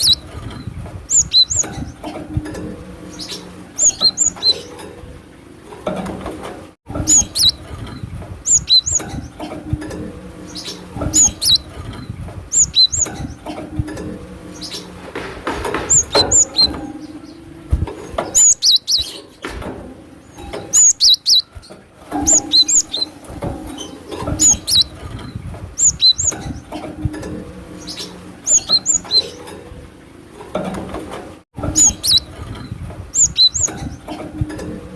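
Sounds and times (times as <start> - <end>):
bird chirping: 0.0 - 2.1, 3.0 - 4.8, 7.0 - 9.5, 10.4 - 13.5, 14.4 - 15.0, 15.7 - 19.5, 20.3 - 26.7, 27.7 - 29.5, 31.7 - 34.1.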